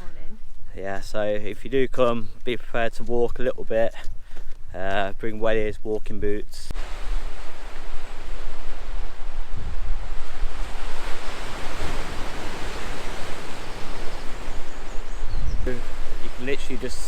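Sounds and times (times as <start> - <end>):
sea surf rushing: 6.7 - 17.0
wind buffeting microphone: 6.7 - 17.0.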